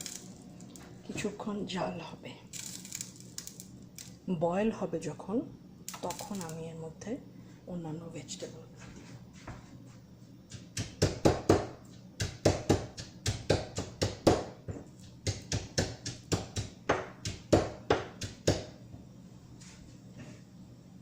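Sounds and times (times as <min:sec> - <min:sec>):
sharp kitchen knocks: 0:10.8 - 0:18.7.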